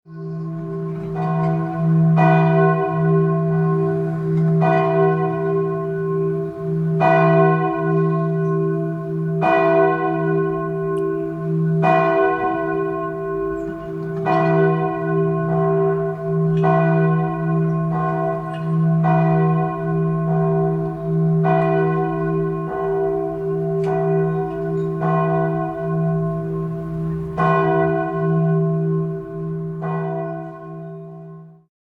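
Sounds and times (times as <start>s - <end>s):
church bell tolling: 0.1s - 31.7s.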